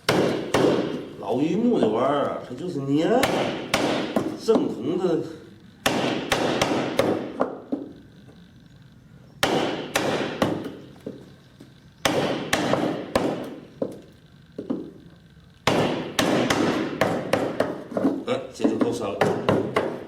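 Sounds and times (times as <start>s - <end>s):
chisel strikes into wood: 0.1s - 1.0s, 3.2s - 4.7s, 5.8s - 7.6s, 9.4s - 10.8s, 12.0s - 13.6s, 15.6s - 20.0s.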